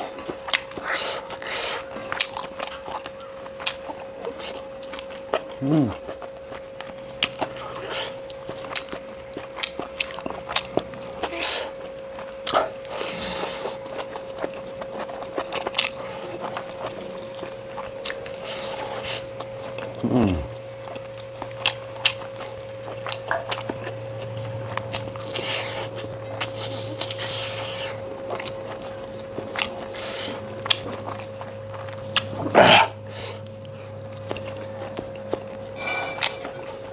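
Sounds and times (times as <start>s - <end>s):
close chewing and biting: 0.0s - 36.9s
faint steady hum: 0.0s - 36.9s
short falling vocal sound: 5.6s - 6.0s, 20.0s - 20.5s.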